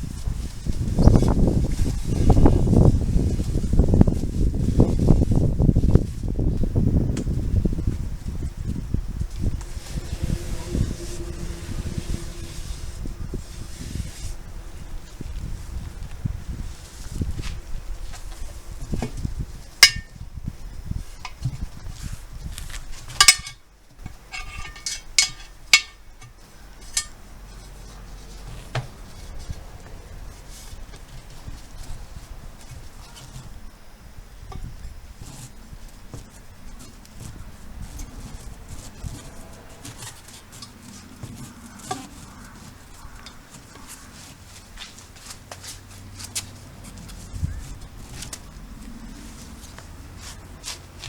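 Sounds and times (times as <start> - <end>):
handling and scraping noise: 0.0 - 20.2, 21.1 - 33.7, 34.5 - 51.0
metal tools clinking on wheel rim: 24.3 - 26.0.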